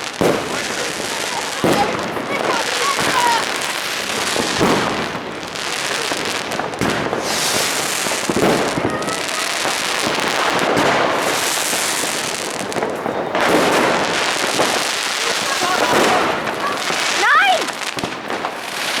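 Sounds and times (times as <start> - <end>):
rocket hissing: 0.0 - 12.6
fireworks bangs and crackling: 0.0 - 19.0.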